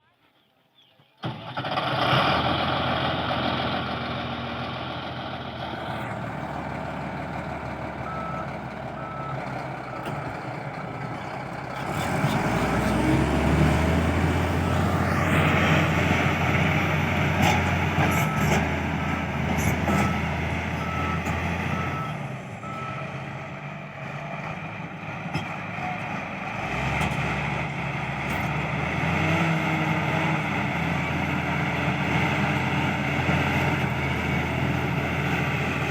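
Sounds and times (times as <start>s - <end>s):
bulldozer diesel engine running: 1.2s - 35.9s
reversing alarm beeping: 8.0s - 10.3s, 14.5s - 16.4s, 17.9s - 23.1s.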